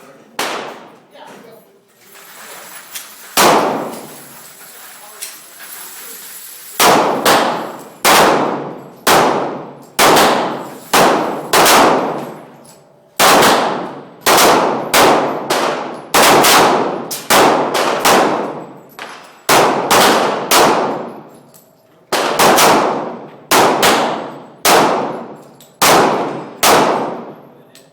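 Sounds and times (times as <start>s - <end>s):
pistol shots echoing: 0.4s - 1.0s, 3.2s - 4.4s, 6.8s - 12.6s, 13.2s - 21.3s, 22.1s - 27.4s.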